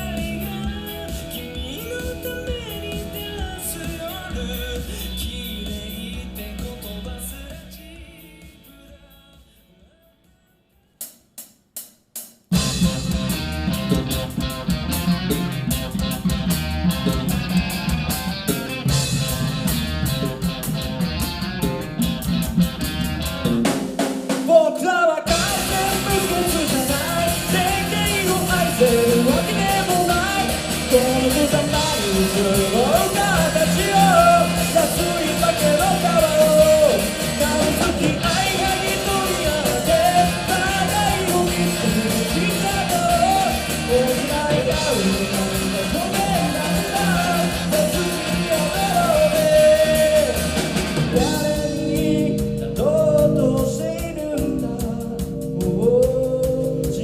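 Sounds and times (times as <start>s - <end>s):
electric guitar: 0.0s - 8.8s, 12.5s - 57.0s
bass guitar: 0.0s - 9.5s, 12.5s - 24.4s, 25.3s - 57.0s
keyboard: 0.0s - 10.8s, 12.5s - 57.0s
lead vocal singing: 0.0s - 10.9s, 23.8s - 57.0s
drum kit: 0.0s - 57.0s.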